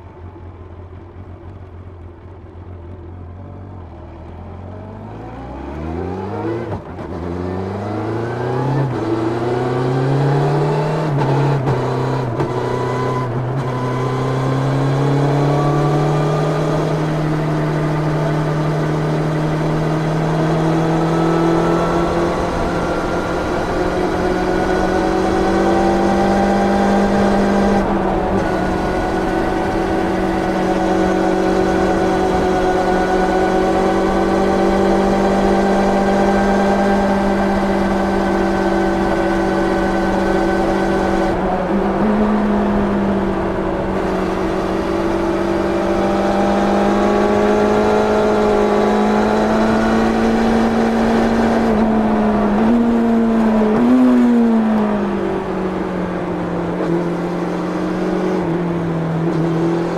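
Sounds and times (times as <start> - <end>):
motorcycle engine at high revs: 0.0 - 59.9
wind rush: 21.1 - 55.8.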